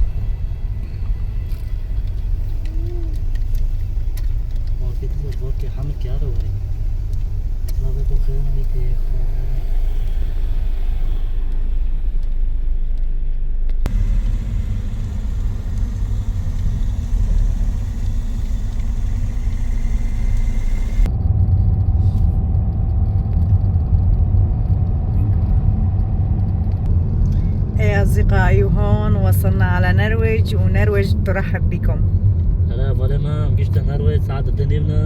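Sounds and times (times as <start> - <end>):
faint steady hum: 0.0 - 21.1
moving vehicle rumble: 0.0 - 35.0.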